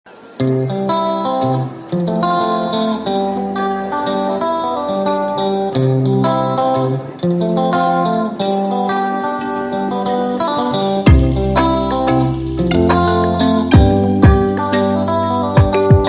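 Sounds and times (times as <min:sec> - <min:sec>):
plucked guitar music: 0:00.1 - 0:16.0.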